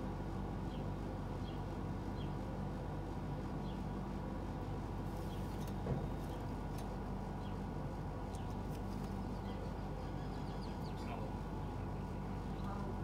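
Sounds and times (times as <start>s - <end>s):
low background hum: 0.0s - 13.0s
faint high bird chirps: 9.2s - 11.2s.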